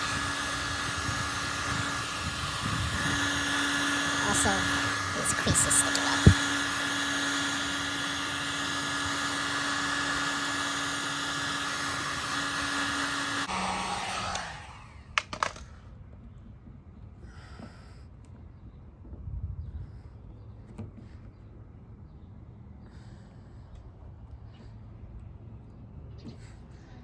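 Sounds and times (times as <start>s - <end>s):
heat gun blowing: 0.0s - 15.5s.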